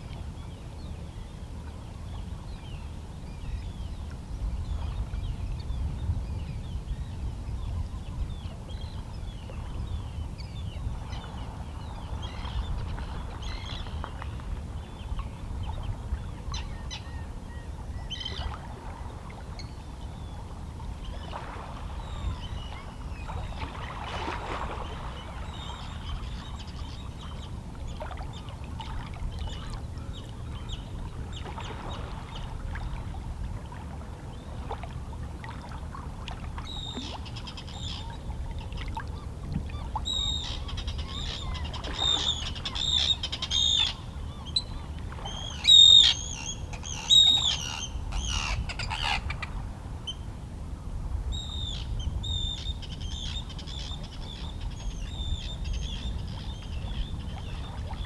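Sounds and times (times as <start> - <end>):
seabirds calling: 36.7 - 50.3.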